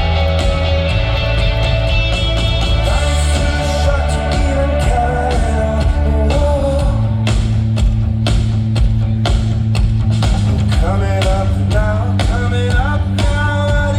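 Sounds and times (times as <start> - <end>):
drum kit beat: 0.0 - 13.9
guitar and bass chords: 0.0 - 13.9.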